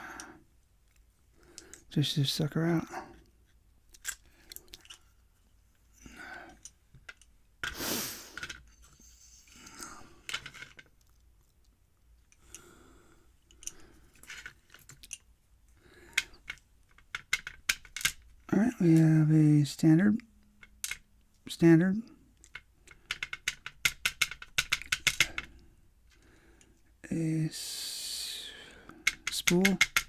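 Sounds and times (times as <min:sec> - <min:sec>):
metallic clicks and rattles of lock: 0:16.4 - 0:18.3, 0:22.4 - 0:25.5.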